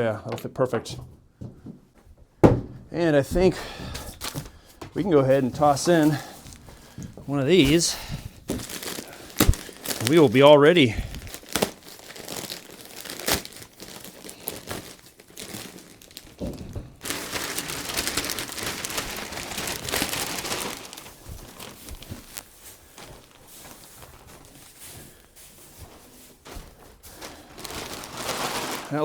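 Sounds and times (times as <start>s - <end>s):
sharp knocks: 2.4s - 2.9s
plastic packaging crinkling and tearing: 4.1s - 29.0s.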